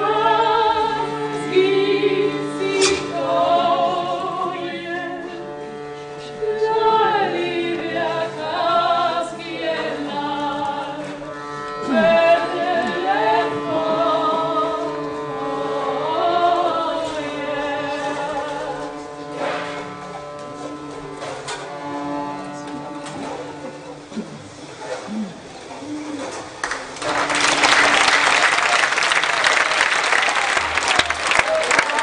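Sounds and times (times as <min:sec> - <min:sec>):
voices singing gliding phrases: 0:00.0 - 0:05.4, 0:11.8 - 0:18.6.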